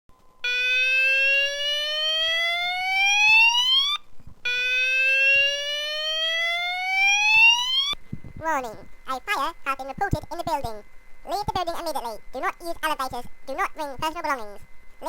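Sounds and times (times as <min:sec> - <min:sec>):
fire alarm rising whoop tone: 0:00.4 - 0:08.0.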